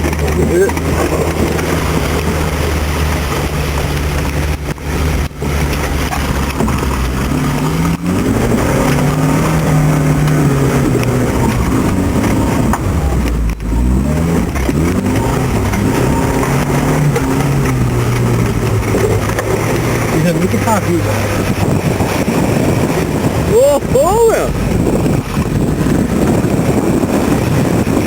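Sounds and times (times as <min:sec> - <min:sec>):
off-road vehicle engine running: 0:00.0 - 0:28.0.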